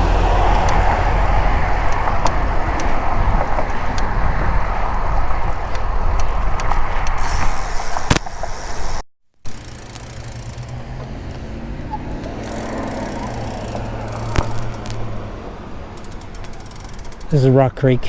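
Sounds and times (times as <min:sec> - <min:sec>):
wind buffeting microphone: 0:00.0 - 0:08.1
rolling road noise: 0:00.0 - 0:18.0
faint ticks: 0:05.6 - 0:15.1, 0:15.8 - 0:17.6
sharp click: 0:06.2 - 0:11.4, 0:12.2 - 0:15.1.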